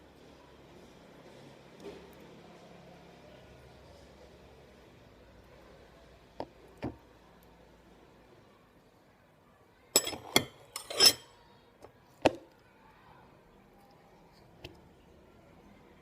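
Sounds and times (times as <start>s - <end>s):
hard objects knocking and clinking: 10.0s - 11.2s.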